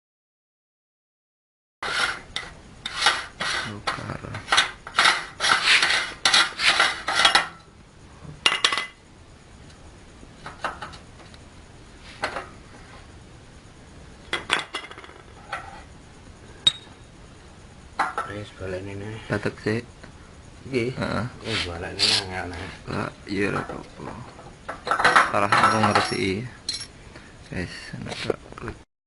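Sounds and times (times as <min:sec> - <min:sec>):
metal dishes and utensils clattering: 0:24.9 - 0:26.9.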